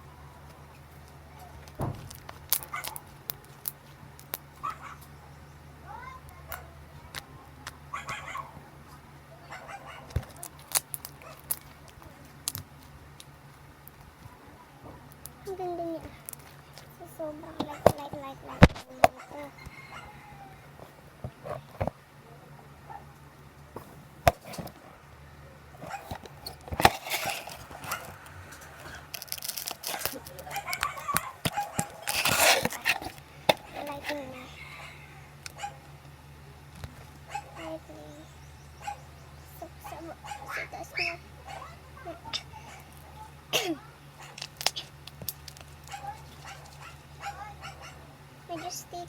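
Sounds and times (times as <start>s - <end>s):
slime squishing and popping: 26.1s - 34.1s.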